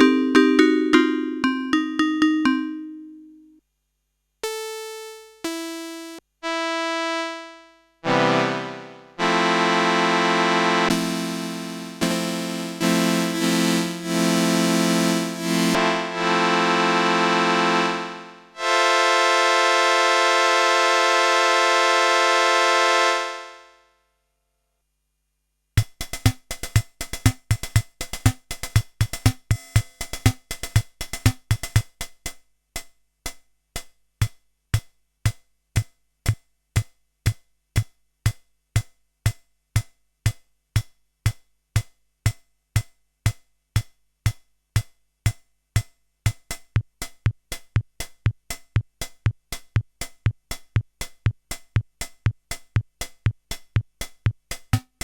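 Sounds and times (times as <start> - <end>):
reedy keyboard chord with vibrato: 0.0 - 3.4, 5.5 - 20.1
drum machine beat: 4.4 - 7.5, 25.8 - 32.3, 33.3 - 55.0.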